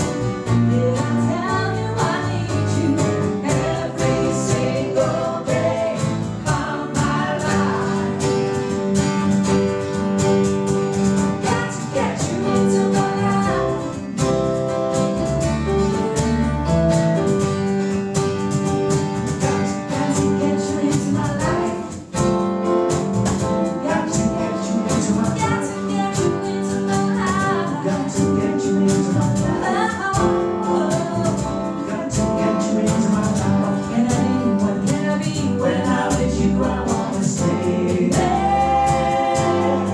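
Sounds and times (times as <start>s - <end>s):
voices singing: 0.0s - 9.0s, 11.4s - 14.1s, 19.4s - 22.1s, 23.6s - 39.9s
guitar accompaniment: 0.0s - 39.9s.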